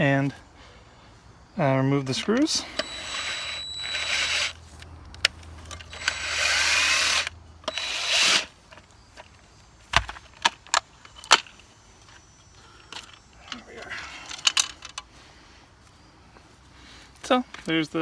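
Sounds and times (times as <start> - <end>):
parts clicking and knocking: 2.0 - 15.1
cordless drill spinning: 2.1 - 4.6, 5.7 - 8.6.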